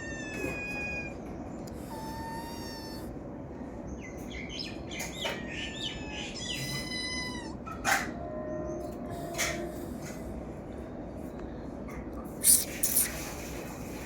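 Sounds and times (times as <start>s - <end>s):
cat mewing and chirping: 0.0s - 3.6s, 4.2s - 8.2s, 12.4s - 13.4s.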